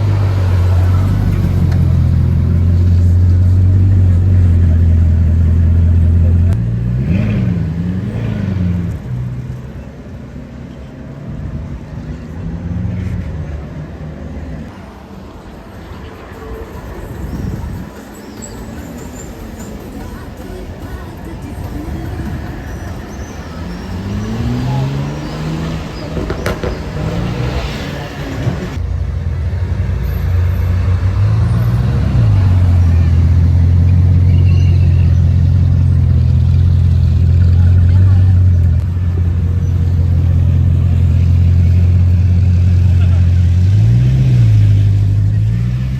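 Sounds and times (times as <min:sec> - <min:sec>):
car engine running at low speed: 0:00.0 - 0:14.7
car engine droning: 0:00.0 - 0:45.9
street noise: 0:00.0 - 0:45.9.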